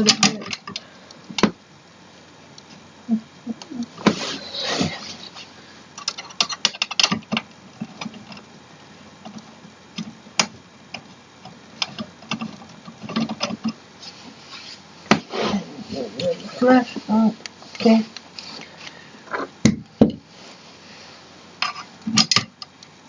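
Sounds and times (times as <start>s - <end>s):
metal chair hardware clicks: 6.0s - 8.4s, 9.3s - 13.8s, 21.6s - 22.8s.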